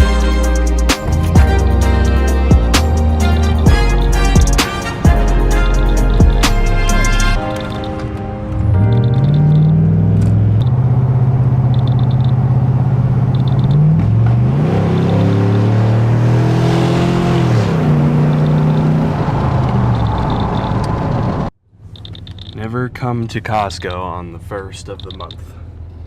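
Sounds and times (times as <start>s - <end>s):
car engine accelerating through gears: 7.5s - 22.5s.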